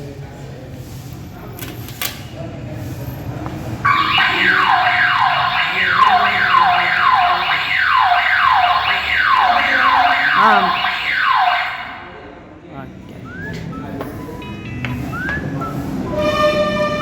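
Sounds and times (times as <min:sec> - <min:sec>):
electronic alarm siren: 0:03.8 - 0:12.3.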